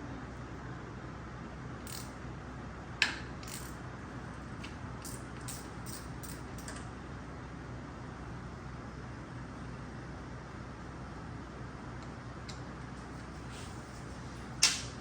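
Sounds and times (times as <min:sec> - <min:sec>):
hand tool metal clicks: 0:01.9 - 0:02.1.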